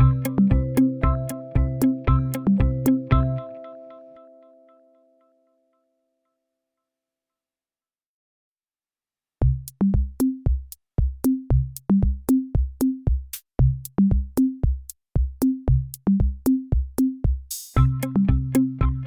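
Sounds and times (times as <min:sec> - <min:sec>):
electronic drum-machine music: 0:00.0 - 0:03.6, 0:09.4 - 0:19.0.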